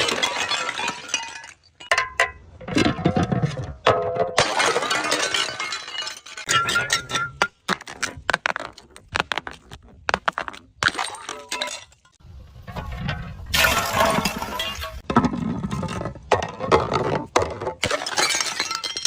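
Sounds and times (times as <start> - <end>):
glass bottles shattering: 0.0 - 8.1, 10.7 - 12.2, 13.5 - 15.1, 17.8 - 19.0.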